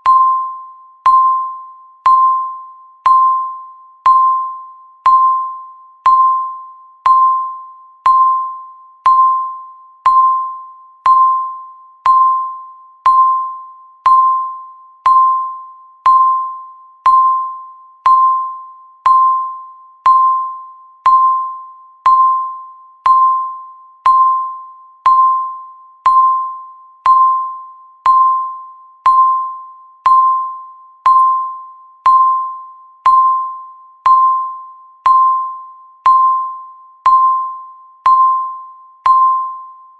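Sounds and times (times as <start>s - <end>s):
timer tick ping: 0.0s - 39.9s.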